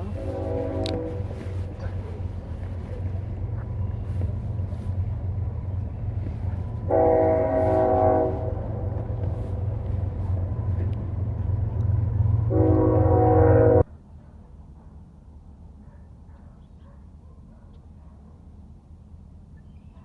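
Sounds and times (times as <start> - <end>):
multi-tone train horn: 0.0 - 1.9, 6.7 - 10.4, 12.2 - 13.9
train rumbling past: 0.0 - 20.0.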